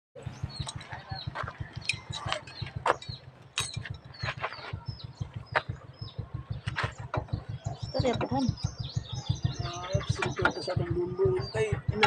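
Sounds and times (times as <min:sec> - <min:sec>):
low rhythmic thudding: 0:00.2 - 0:12.0.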